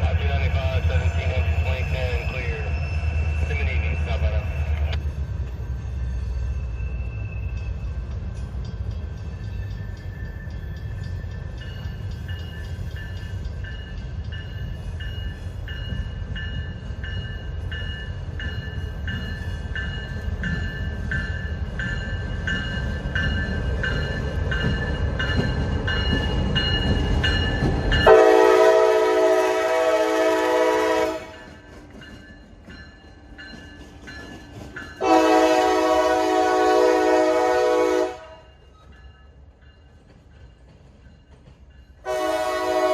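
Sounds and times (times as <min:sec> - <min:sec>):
freight train rumbling: 0:00.0 - 0:42.9
railroad crossing bell ringing: 0:00.0 - 0:42.9
locomotive air horn: 0:28.0 - 0:31.4, 0:35.0 - 0:38.5, 0:42.0 - 0:42.9.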